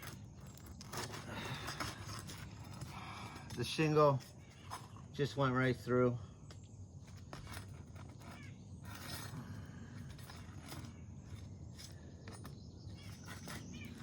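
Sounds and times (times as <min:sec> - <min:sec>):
shingles being pried up: 0:00.0 - 0:05.1.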